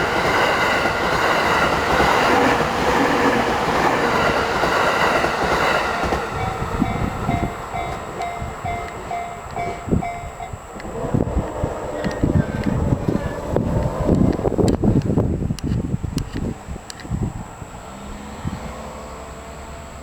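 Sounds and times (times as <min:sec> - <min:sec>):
crossing warning bell: 0:00.0 - 0:14.7
train rumbling past: 0:00.0 - 0:15.4
steady ringing tones: 0:00.0 - 0:17.9.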